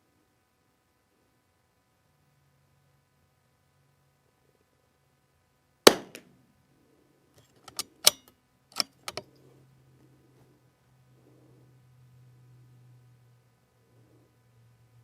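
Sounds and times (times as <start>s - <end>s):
rifle shot: 5.9s - 6.3s
rifle bolt metallic clicks: 7.6s - 9.3s.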